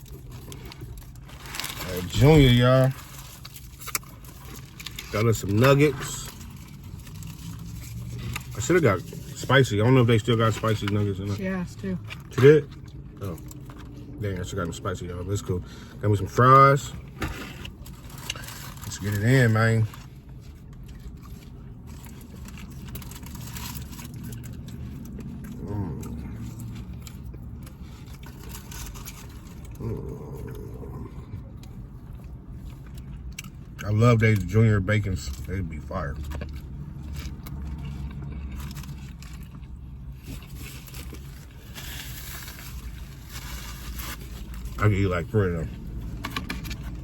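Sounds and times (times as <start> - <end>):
person eating close up: 0.0 - 9.4, 19.8 - 34.5, 35.1 - 44.7
car idling hum: 0.0 - 47.0
chewing: 19.9 - 33.8, 36.2 - 42.5.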